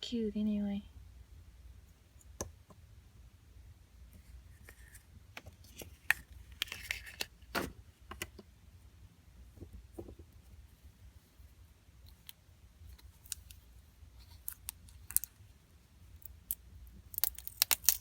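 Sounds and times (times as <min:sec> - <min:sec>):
packaging crinkling: 0:13.0 - 0:15.4, 0:16.2 - 0:18.0
plastic toys clicking and tapping: 0:16.2 - 0:18.0.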